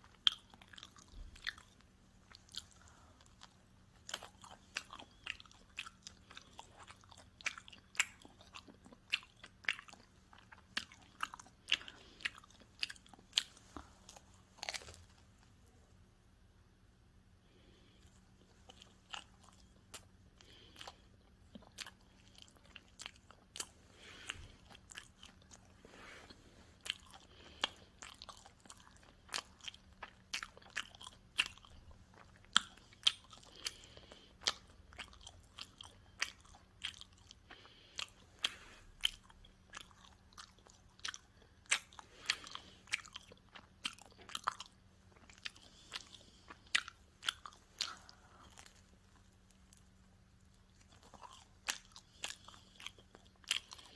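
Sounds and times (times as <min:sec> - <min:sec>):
crunchy pizza crust chewing: 0:00.0 - 0:15.6, 0:17.5 - 0:53.9.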